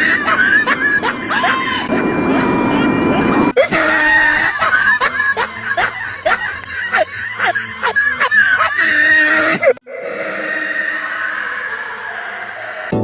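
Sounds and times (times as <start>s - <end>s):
pitch-altered laughing: 3.6s - 6.7s.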